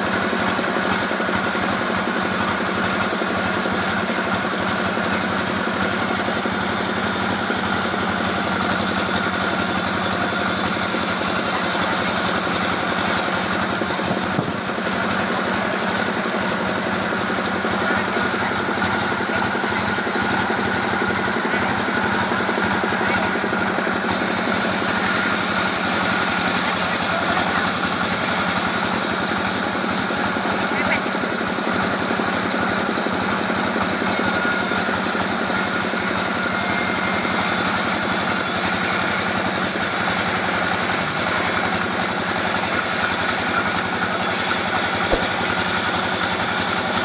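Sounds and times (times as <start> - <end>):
engine running: 0.0 - 35.6, 36.3 - 47.0
sawmill saw cutting log: 0.0 - 47.0.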